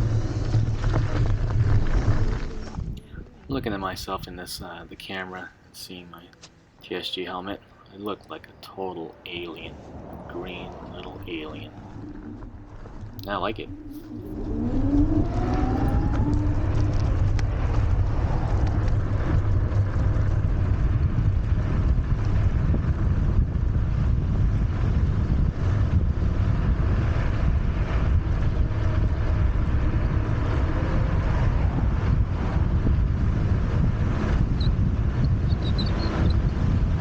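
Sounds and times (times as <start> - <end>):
wind buffeting microphone: 0.0 - 5.1, 8.0 - 37.0
electric motor whine: 10.8 - 20.5.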